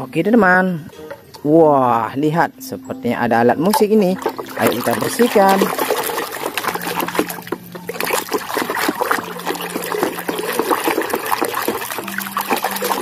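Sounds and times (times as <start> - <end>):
water trickling and splashing: 3.6 - 13.0.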